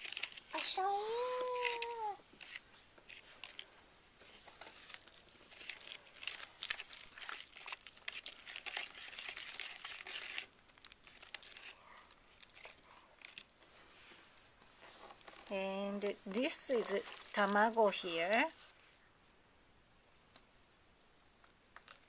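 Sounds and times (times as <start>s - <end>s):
plastic packaging crinkling: 0.0s - 13.7s, 16.3s - 19.0s.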